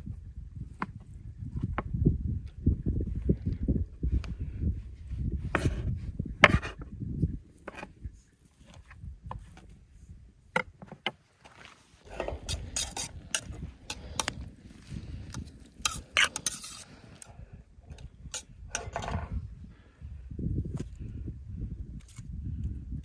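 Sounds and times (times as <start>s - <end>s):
metal utensil stirring in pot: 12.0s - 17.3s.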